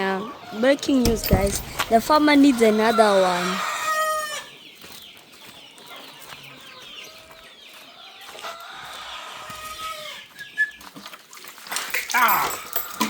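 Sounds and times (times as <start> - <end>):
chickens clucking and calling: 2.4 - 10.4.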